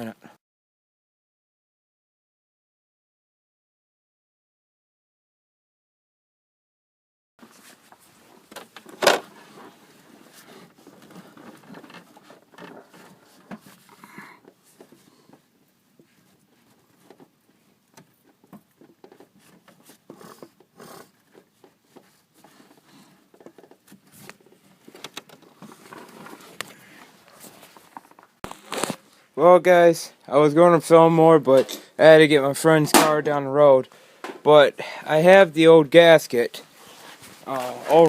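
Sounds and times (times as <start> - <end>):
clicks and rustles of handled tools: 7.4 - 29.1, 31.5 - 32.0.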